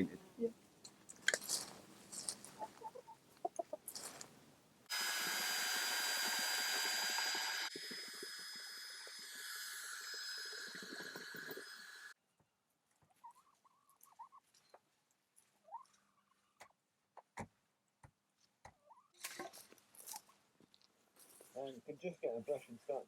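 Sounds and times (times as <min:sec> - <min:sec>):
chickens clucking: 0:02.1 - 0:04.0, 0:13.0 - 0:14.6, 0:18.6 - 0:20.3
high hiss with whistling tone: 0:04.9 - 0:12.2.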